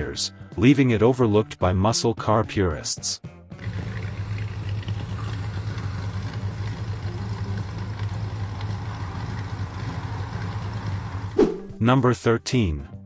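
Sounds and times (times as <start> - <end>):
car engine idling: 3.6 - 11.4.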